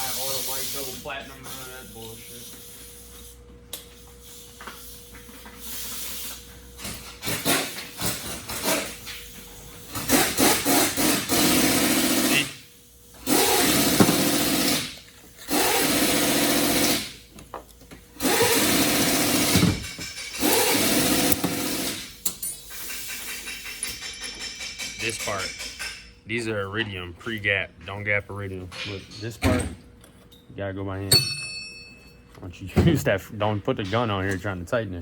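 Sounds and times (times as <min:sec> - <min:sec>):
power gun bursts: 0:10.1 - 0:12.6
tool clicks and rattles: 0:18.2 - 0:26.1.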